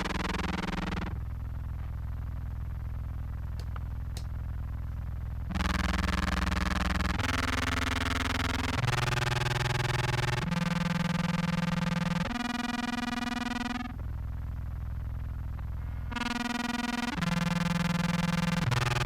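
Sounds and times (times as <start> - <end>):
fuzz distorted contrabass clarinet: 5.5 - 14.0, 15.8 - 19.0.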